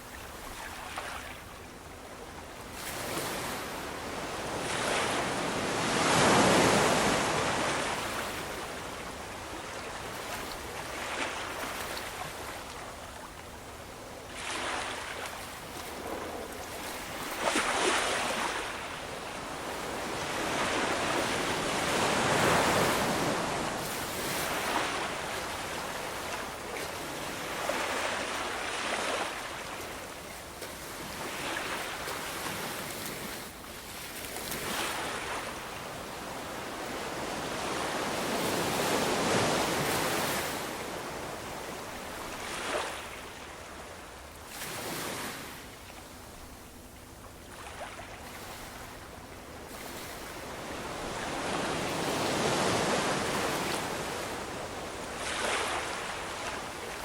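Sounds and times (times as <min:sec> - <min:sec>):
ocean waves breaking: 0:02.8 - 0:08.6, 0:14.4 - 0:29.8, 0:30.9 - 0:35.6, 0:47.5 - 0:57.0.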